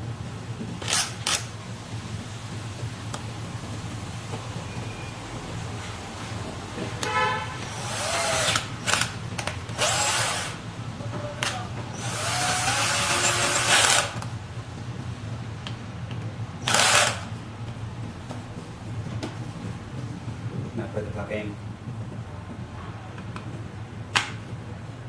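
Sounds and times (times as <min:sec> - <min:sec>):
cordless power screwdriver running: 0:00.8 - 0:01.5, 0:07.6 - 0:10.6, 0:11.4 - 0:14.3, 0:16.6 - 0:17.3.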